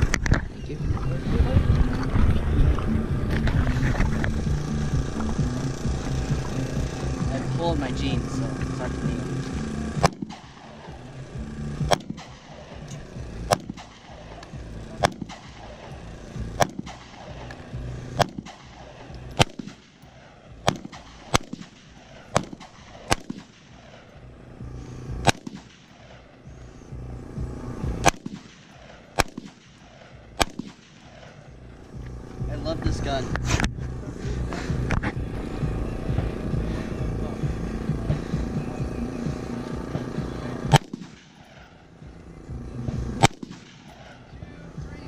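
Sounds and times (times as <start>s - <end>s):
rifle shots with echo: 7.2s - 26.5s, 27.5s - 32.2s, 39.1s - 42.0s, 42.8s - 44.5s.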